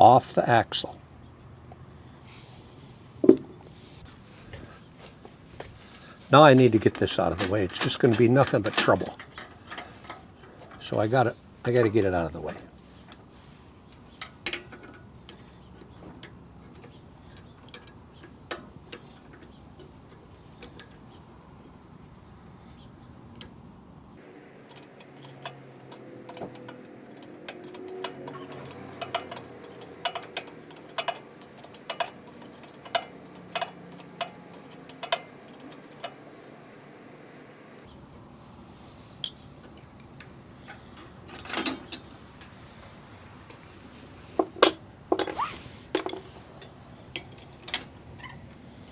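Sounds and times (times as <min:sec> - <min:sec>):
hand tools clicking on bike parts: 0:06.4 - 0:11.0, 0:24.2 - 0:37.9.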